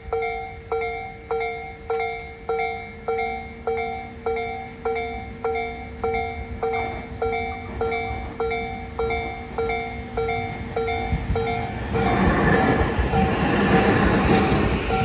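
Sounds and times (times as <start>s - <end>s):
level crossing warning bell: 0.0s - 12.3s, 13.0s - 15.0s
electric train running: 3.7s - 15.0s.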